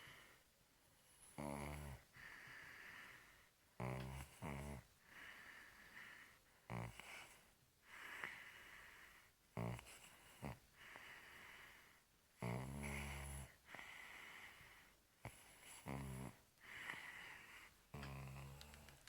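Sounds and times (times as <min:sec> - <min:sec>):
baby snoring: 0:01.3 - 0:02.0, 0:03.8 - 0:04.8, 0:12.4 - 0:13.6, 0:15.3 - 0:17.2, 0:17.9 - 0:19.0
airy breaths: 0:02.1 - 0:03.5, 0:05.0 - 0:06.5, 0:10.8 - 0:12.1, 0:13.6 - 0:15.0, 0:16.6 - 0:17.8.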